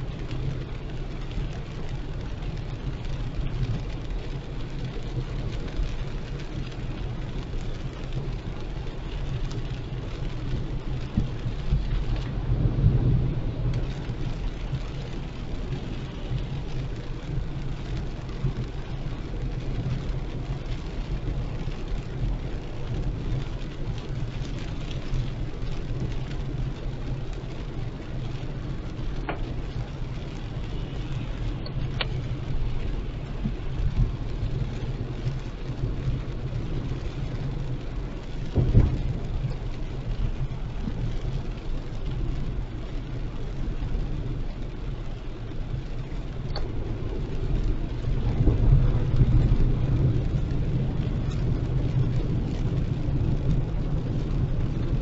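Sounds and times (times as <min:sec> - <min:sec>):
engine and tyres on wet road: 0:00.0 - 0:55.0
rain hissing on car: 0:00.0 - 0:55.0
faint ticks: 0:46.3 - 0:46.8.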